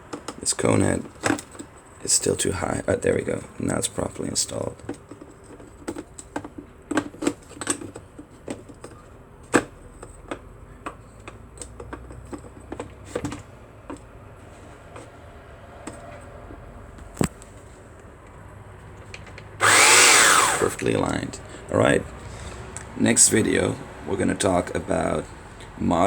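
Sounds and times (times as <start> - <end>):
plastic parts clicking and knocking: 0.0 - 1.9, 3.7 - 14.1.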